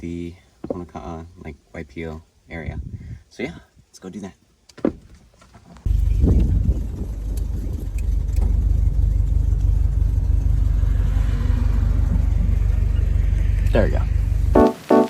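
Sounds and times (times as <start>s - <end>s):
car engine low rumble: 4.8s - 14.7s.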